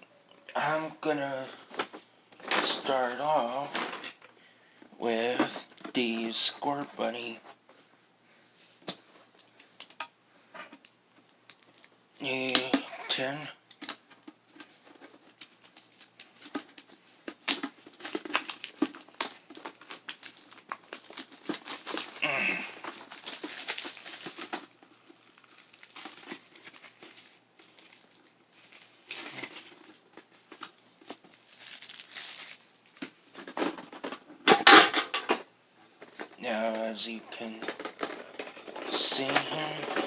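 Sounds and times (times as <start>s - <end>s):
plastic wrapping crinkling and tearing: 11.5s - 34.3s.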